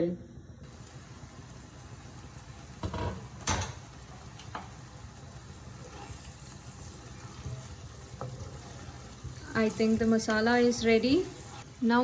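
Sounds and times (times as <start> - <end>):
cookware clattering: 2.8 - 3.9.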